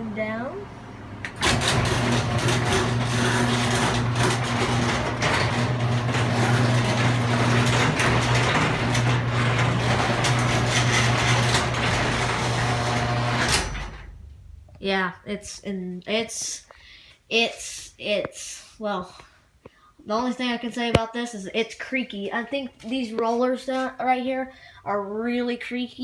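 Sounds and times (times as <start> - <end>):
garage door opener motor hum: 0.5 - 14.8
door rollers rattling and creaking: 1.2 - 14.8.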